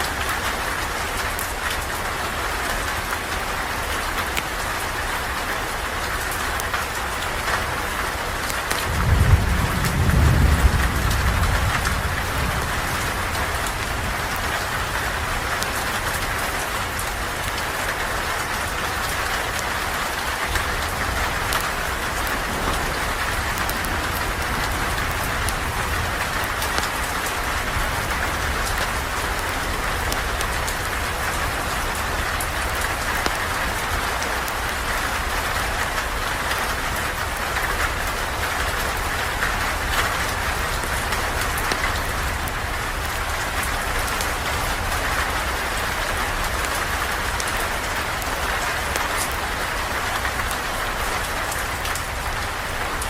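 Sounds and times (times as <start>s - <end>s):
steady rain falling: 0.0s - 53.0s
thunder rumble: 8.8s - 17.0s, 19.8s - 49.8s.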